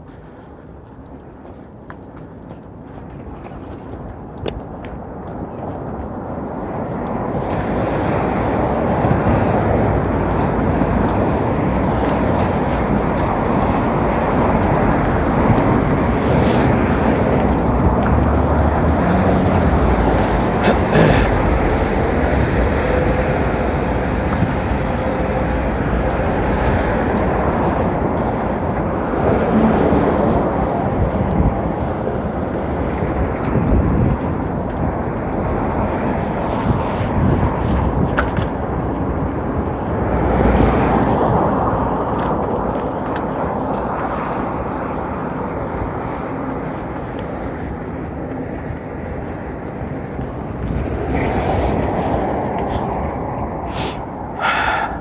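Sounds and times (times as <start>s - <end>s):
wind over microphone: 0.0s - 55.0s
bike tyres on dirt trail: 26.7s - 47.8s.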